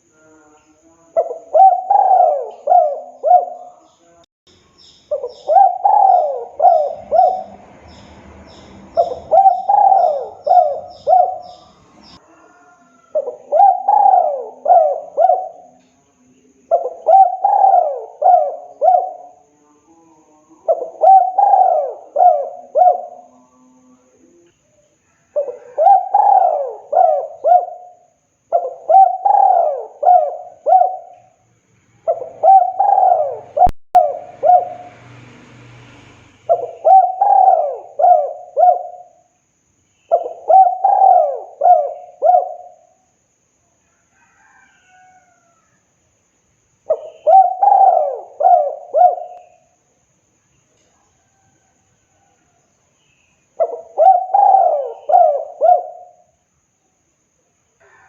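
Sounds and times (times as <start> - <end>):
faint high bird chirps: 0.0 - 35.1, 36.4 - 43.0, 43.8 - 57.0
dove cooing: 1.2 - 3.8, 5.1 - 24.4, 25.1 - 31.4, 32.0 - 35.0, 36.4 - 39.4, 40.1 - 43.0, 46.9 - 49.8, 53.6 - 56.3.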